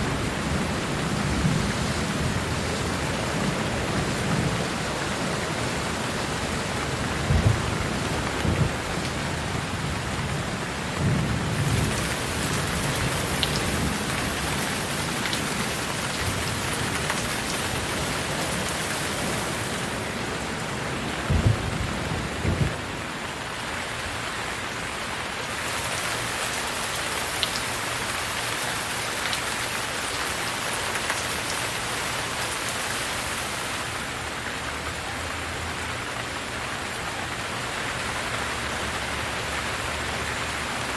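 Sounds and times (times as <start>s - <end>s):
steady rain: 0.0s - 40.9s
low rumbles of thunder: 7.1s - 19.9s, 20.6s - 23.1s.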